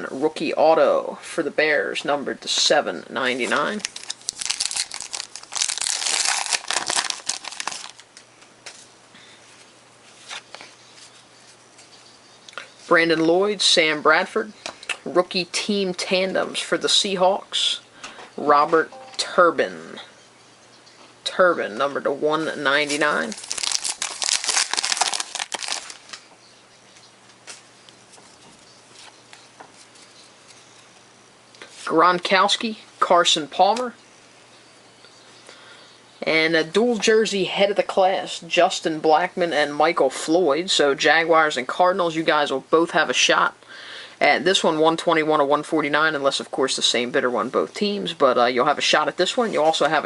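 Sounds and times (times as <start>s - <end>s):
card packaging crinkling: 3.4s - 8.2s, 22.8s - 26.2s.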